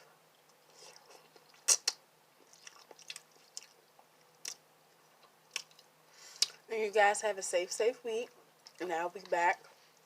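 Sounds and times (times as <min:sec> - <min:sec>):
person chewing noodles: 0:00.3 - 0:06.6
wet mouth clicks and smacks: 0:00.4 - 0:03.8, 0:05.2 - 0:06.6.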